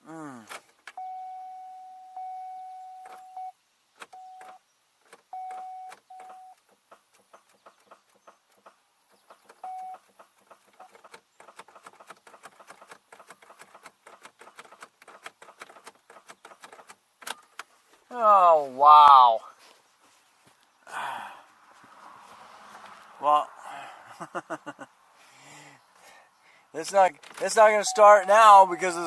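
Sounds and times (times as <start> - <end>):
car warning chime: 1.0 - 4.6, 5.3 - 6.6, 9.6 - 10.0, 27.5 - 29.0
faint irregular clicks: 4.0 - 17.7.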